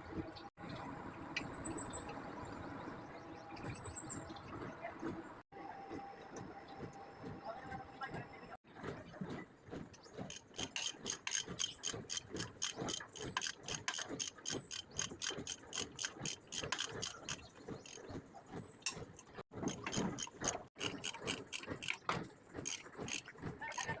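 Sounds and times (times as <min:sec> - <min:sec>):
rapid mechanical clicking: 0:10.2 - 0:24.0.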